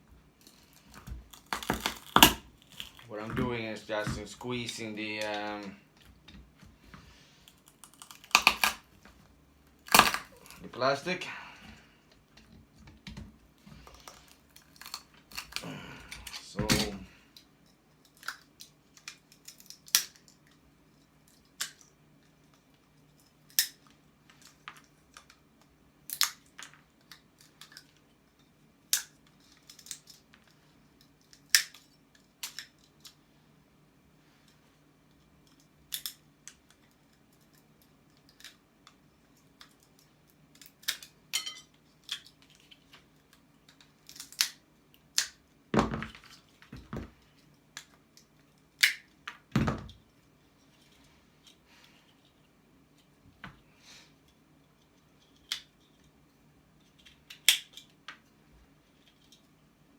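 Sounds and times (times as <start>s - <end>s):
plastic casing cracking: 7.5s - 8.9s, 9.8s - 10.6s.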